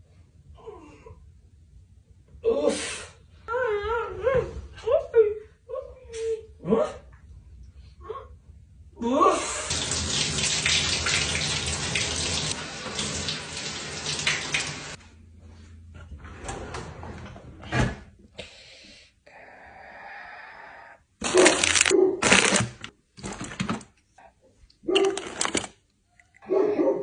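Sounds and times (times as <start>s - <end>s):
tap water running into sink: 9.7s - 15.0s
handling sounds: 21.2s - 24.0s, 24.9s - 26.4s.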